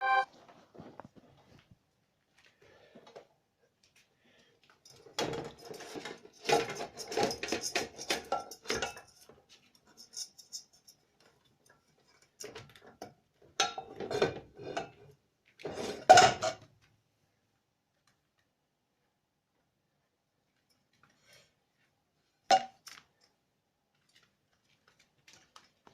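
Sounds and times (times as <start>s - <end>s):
dishes and cutlery clinking: 4.9s - 11.1s.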